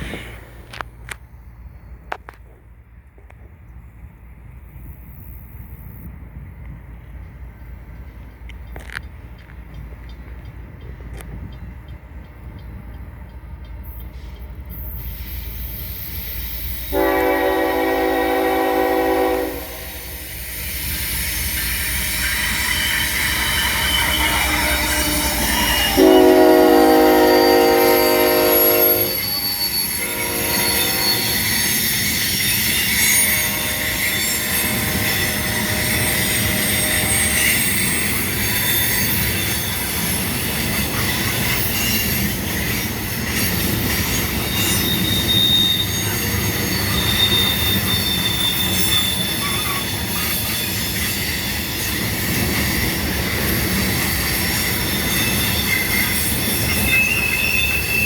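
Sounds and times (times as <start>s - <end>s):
train wheels rumbling on rails: 0.0s - 58.0s
high wheel squeal: 13.9s - 58.0s.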